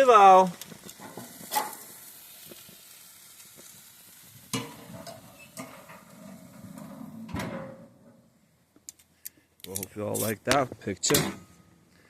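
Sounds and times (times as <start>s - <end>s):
chicken sizzling: 0.0s - 8.0s, 9.2s - 10.9s.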